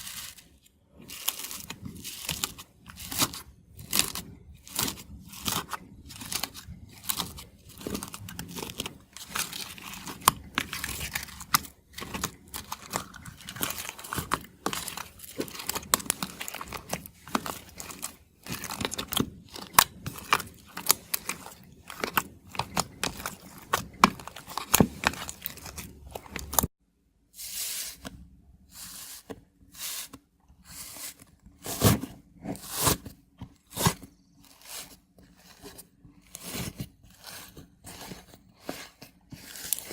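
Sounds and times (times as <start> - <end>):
slime crackling and crunching: 0.0 - 26.7.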